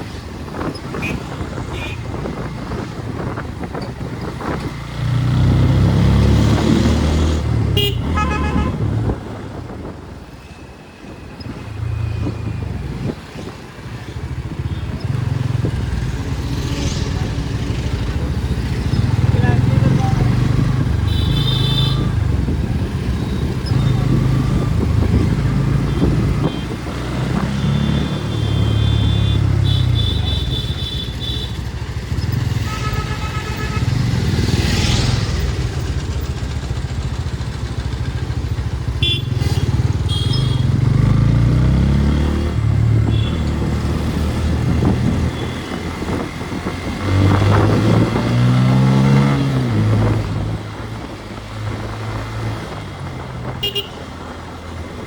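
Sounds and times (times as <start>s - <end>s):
wind and road noise: 0.0s - 55.0s
vehicle horn toots: 0.9s - 2.1s, 7.7s - 9.0s, 21.0s - 22.1s, 27.4s - 31.6s, 32.4s - 34.2s, 39.0s - 40.8s, 43.1s - 43.6s, 53.6s - 54.0s
motorcycle engine running: 14.2s - 48.9s.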